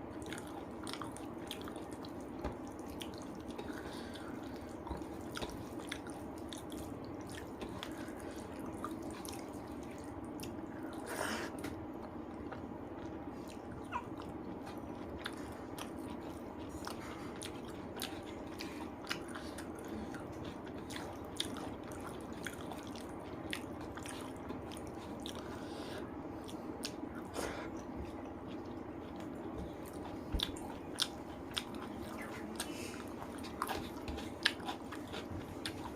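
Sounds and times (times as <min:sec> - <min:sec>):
background hum: 0:00.0 - 0:35.9
chewing and mouth sounds: 0:00.1 - 0:35.9.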